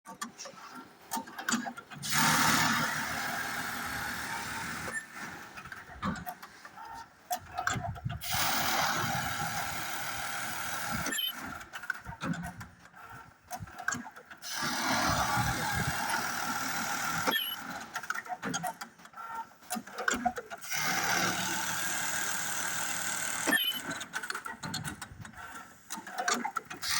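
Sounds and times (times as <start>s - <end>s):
stitching machine sewing: 0.1s - 5.5s, 13.0s - 26.9s
machine clicks: 23.4s - 26.9s.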